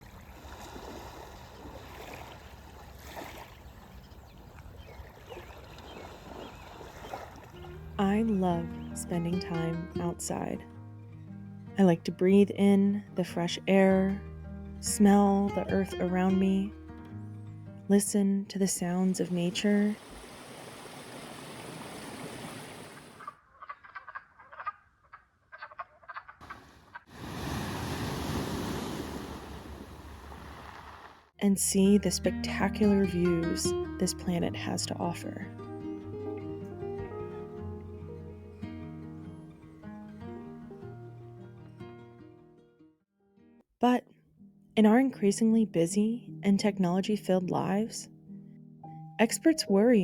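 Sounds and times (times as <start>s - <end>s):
water splashing and gurgling: 0.0s - 7.9s, 19.4s - 23.2s, 26.4s - 31.3s.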